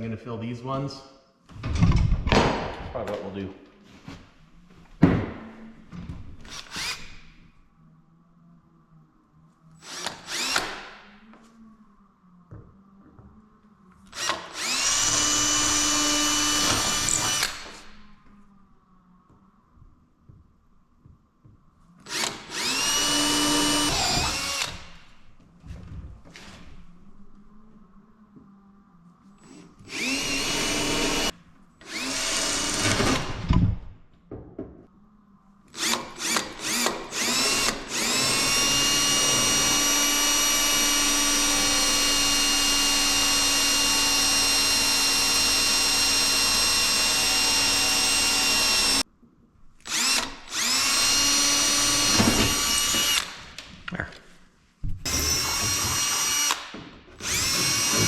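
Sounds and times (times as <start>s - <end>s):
electric drill boring metal: 9.8s - 10.8s, 14.1s - 17.8s, 22.1s - 25.0s, 29.9s - 33.3s, 35.8s - 49.0s, 49.9s - 53.4s, 55.1s - 58.0s.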